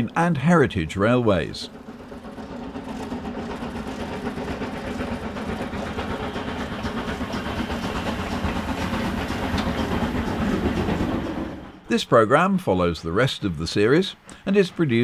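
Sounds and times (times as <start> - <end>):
steam train running: 0.0 - 15.0
rapid mechanical clatter: 1.7 - 11.4.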